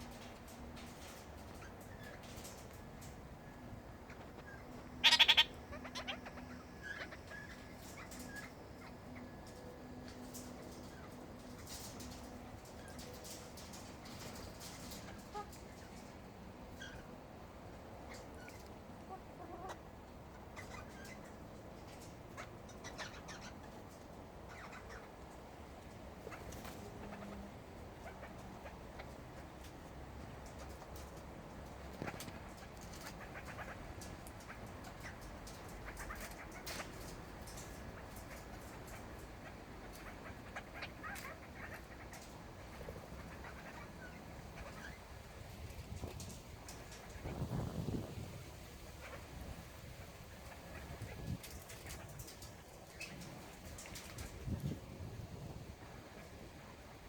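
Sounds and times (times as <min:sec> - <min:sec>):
parrots chirping: 0:04.1 - 0:09.6.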